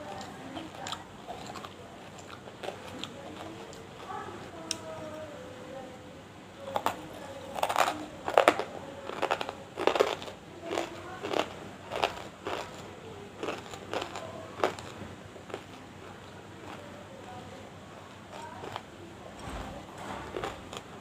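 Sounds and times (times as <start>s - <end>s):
crunching hard pieces: 7.6s - 12.8s.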